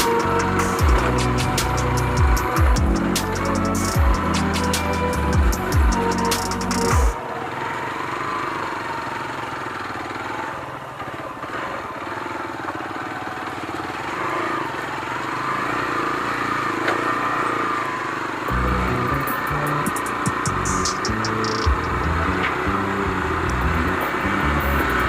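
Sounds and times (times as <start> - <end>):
background music: 0.0 - 7.4, 18.5 - 25.0
motorcycle engine revving: 0.0 - 25.0.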